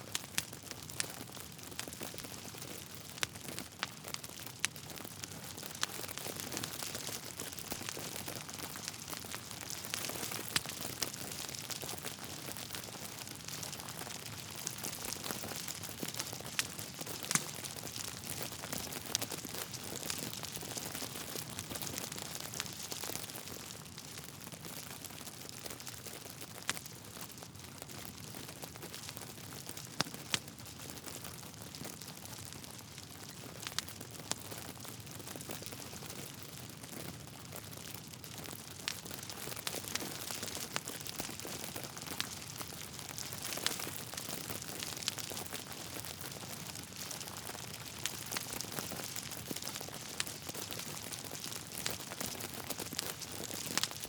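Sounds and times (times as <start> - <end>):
log fire crackling: 0.0 - 54.0
sharp pops of fire: 14.6 - 18.0.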